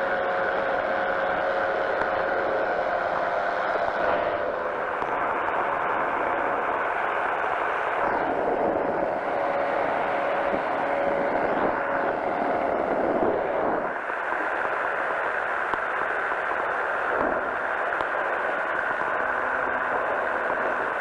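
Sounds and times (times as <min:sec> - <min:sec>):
propeller engine droning: 0:00.0 - 0:21.0
wind noise: 0:07.6 - 0:21.0.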